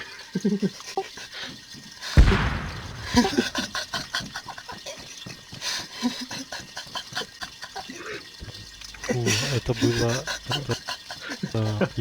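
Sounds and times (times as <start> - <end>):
loud bang of explosion: 2.2 - 3.6
fire crackling and snapping: 2.2 - 3.8.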